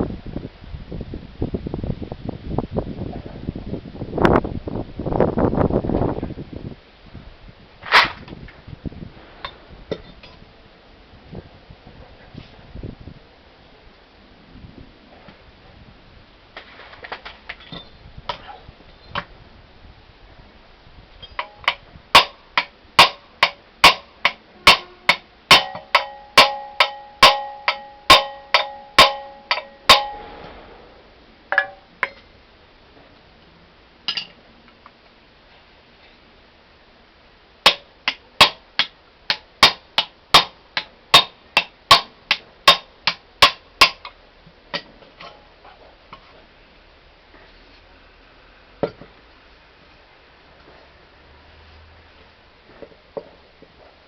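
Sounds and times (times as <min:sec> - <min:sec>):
hammer striking steel: 0:21.2 - 0:32.3, 0:37.7 - 0:44.2
metal ringing: 0:21.2 - 0:32.3.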